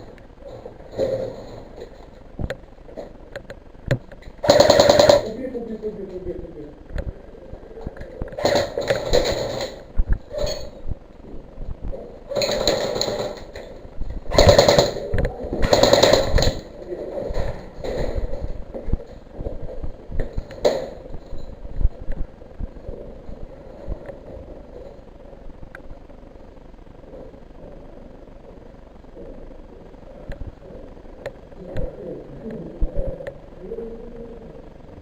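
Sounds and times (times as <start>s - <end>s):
airsoft guns firing bursts: 4.4s - 5.4s, 8.4s - 9.9s, 12.3s - 13.6s, 14.3s - 16.7s.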